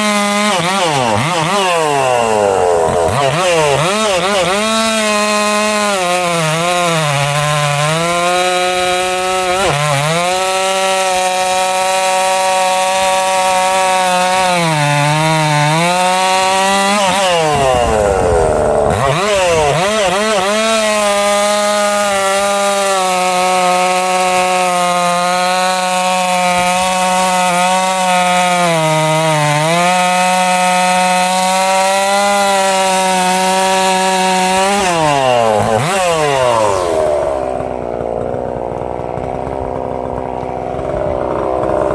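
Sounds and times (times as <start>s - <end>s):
chainsaw cutting a log: 0.0s - 41.9s.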